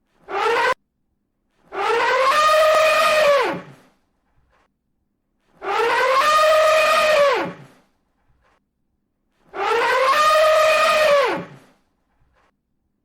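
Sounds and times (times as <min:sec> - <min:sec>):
elephant trumpeting: 0:00.2 - 0:00.8, 0:01.7 - 0:03.9, 0:05.6 - 0:07.8, 0:09.5 - 0:11.8.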